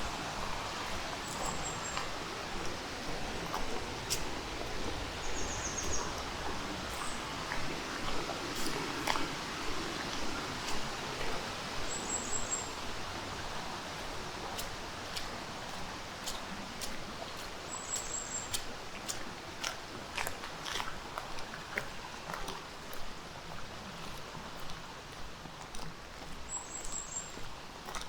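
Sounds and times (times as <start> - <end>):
footsteps on gravel: 0.8 - 7.2.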